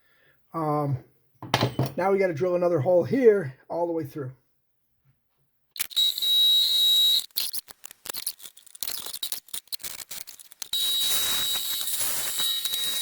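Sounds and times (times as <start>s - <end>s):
electric drill drilling steel: 5.8s - 7.3s, 10.7s - 13.0s.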